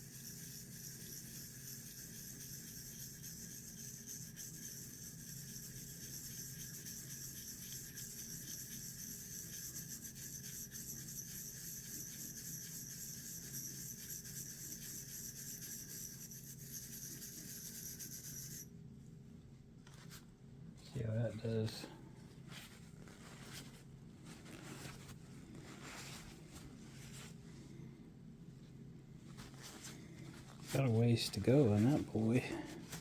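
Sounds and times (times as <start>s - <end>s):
faint rubbing of metal part: 0.0s - 18.7s, 29.3s - 33.0s.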